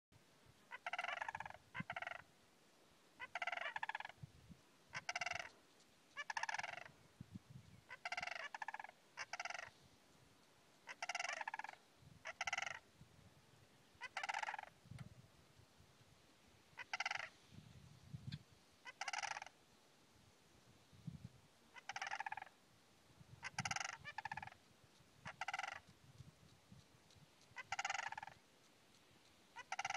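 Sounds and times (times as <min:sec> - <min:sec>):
crane rattling bugle calls: 0:25.2 - 0:25.9, 0:27.5 - 0:29.0, 0:29.6 - 0:29.9.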